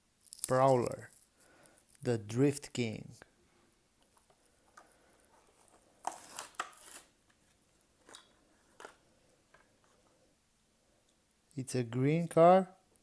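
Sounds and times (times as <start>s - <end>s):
plastic packaging tearing: 0.2s - 1.3s, 5.3s - 9.0s.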